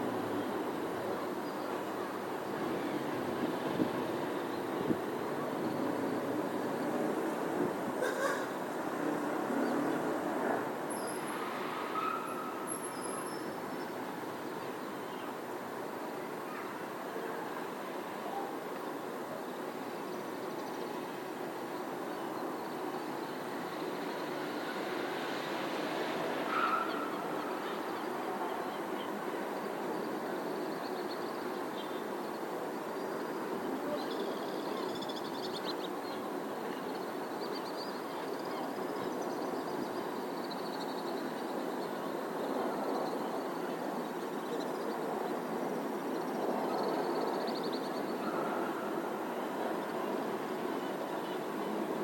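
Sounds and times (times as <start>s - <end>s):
distant city traffic hum: 0.0s - 52.0s
faint bird calls: 8.0s - 8.6s.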